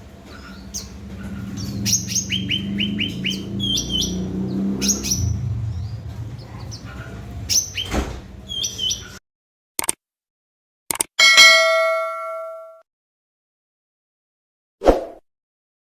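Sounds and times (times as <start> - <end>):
bird chirping and whistling: 0.3 - 6.0, 6.7 - 9.2.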